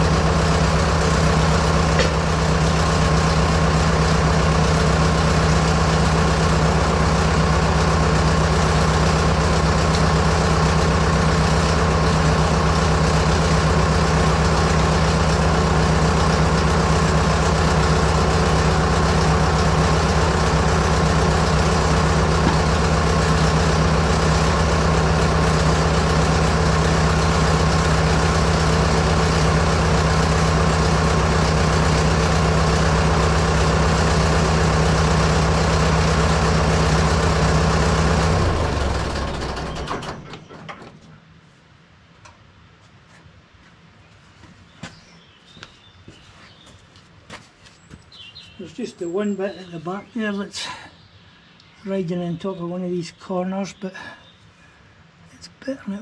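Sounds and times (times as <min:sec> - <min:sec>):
tractor engine running steadily: 0:00.0 - 0:42.8.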